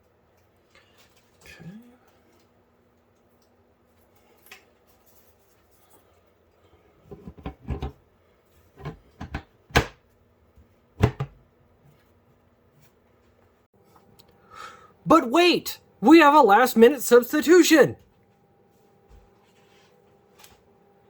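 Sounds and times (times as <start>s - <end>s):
knocks and clunks of case panels: 8.8s - 10.0s, 11.0s - 11.4s.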